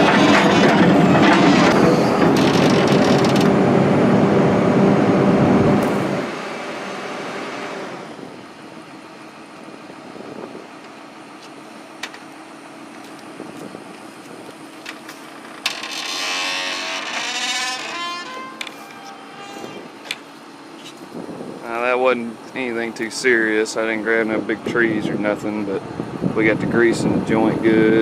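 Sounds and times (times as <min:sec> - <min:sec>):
excavator diesel engine running: 0:00.0 - 0:10.1.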